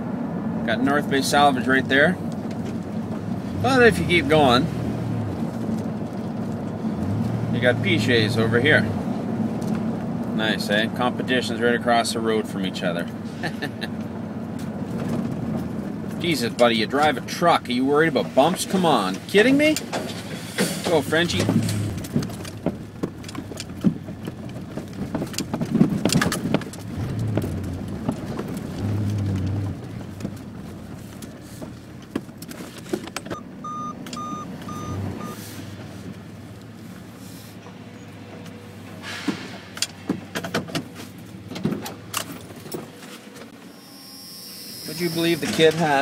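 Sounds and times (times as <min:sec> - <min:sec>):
pickup truck running: 0:00.0 - 0:43.5
knocks and rattles: 0:19.8 - 0:33.3
short beeps: 0:33.3 - 0:35.4.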